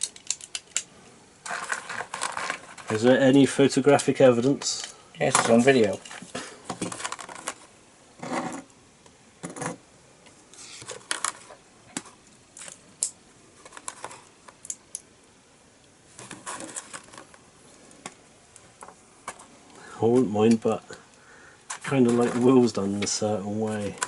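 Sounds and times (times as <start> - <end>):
plastic bricks clicking and rattling: 0.0 - 3.0.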